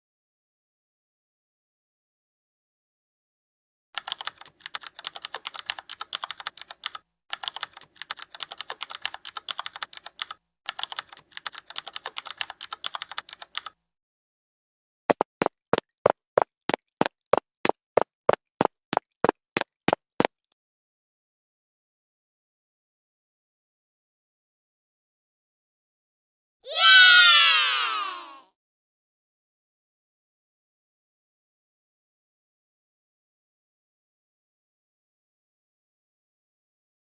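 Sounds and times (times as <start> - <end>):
computer keyboard typing: 4.0 - 13.8.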